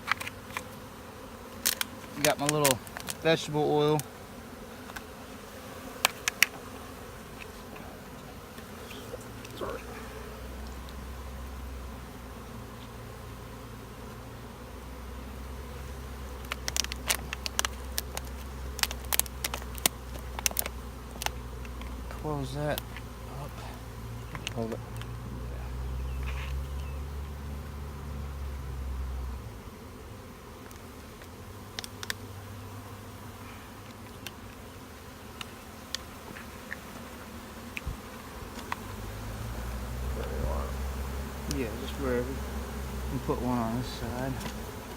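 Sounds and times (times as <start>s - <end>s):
bee swarm buzzing: 0.0s - 44.9s
small sharp clicks: 1.6s - 3.2s, 6.0s - 6.6s, 16.4s - 22.0s, 30.6s - 32.2s, 35.4s - 36.8s.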